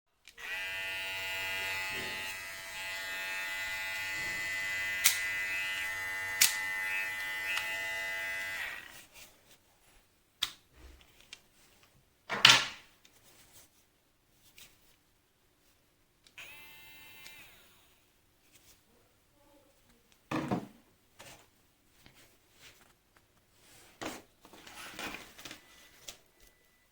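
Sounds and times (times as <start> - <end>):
electric hair clipper buzzing: 0.3 - 8.9, 16.4 - 17.9.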